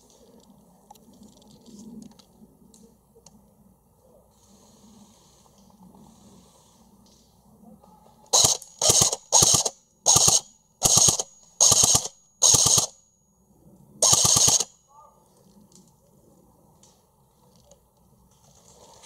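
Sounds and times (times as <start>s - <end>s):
airsoft gun bursts: 8.3s - 13.0s, 14.0s - 14.7s.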